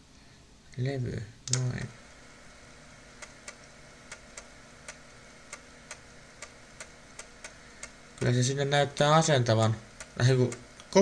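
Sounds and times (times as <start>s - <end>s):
disk motor hum: 1.4s - 11.0s
drive head clicks: 3.1s - 8.4s, 9.5s - 10.9s.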